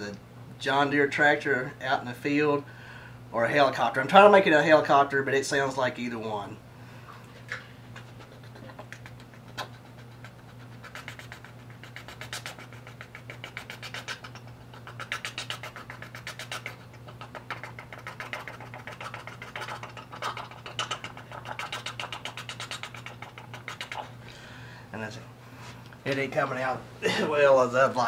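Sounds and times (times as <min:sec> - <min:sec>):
man imitating a helicopter: 0:03.3 - 0:06.6, 0:07.4 - 0:24.2
man talking: 0:24.9 - 0:25.3, 0:26.0 - 0:28.0.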